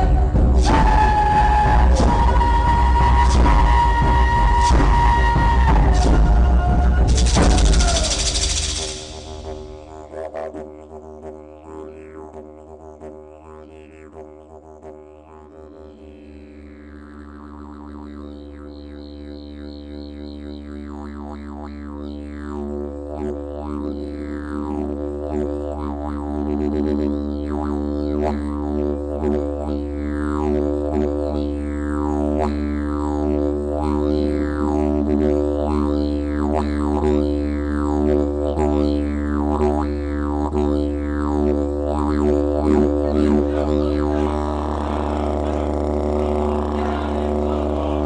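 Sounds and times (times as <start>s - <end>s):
droning instrumental music: 0.0s - 10.3s, 42.0s - 48.0s.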